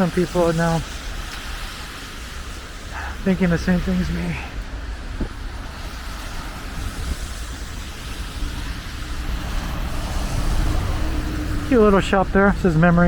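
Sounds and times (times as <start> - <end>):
passing vehicles rumble and hiss: 0.0 - 13.0
engine hum: 2.8 - 13.0.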